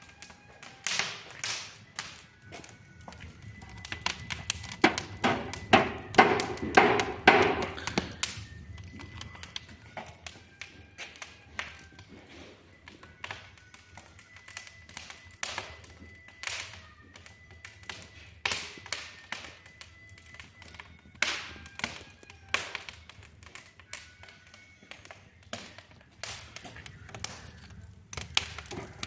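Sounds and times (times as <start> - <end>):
taps and knocks: 3.2 - 8.2.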